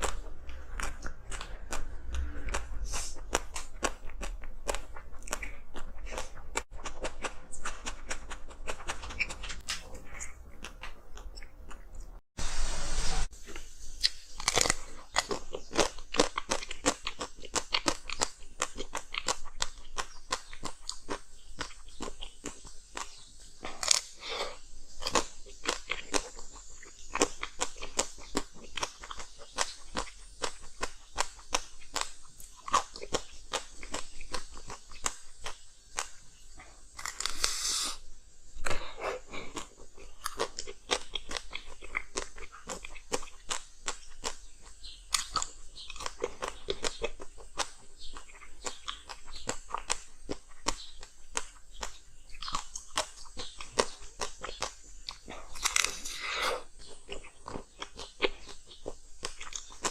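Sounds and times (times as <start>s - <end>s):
ice being chewed: 0.0s - 12.2s, 13.4s - 59.9s
steady hiss: 2.2s - 3.6s, 12.4s - 14.8s, 33.6s - 41.2s
person crunching ice: 37.0s - 38.0s, 55.6s - 56.3s.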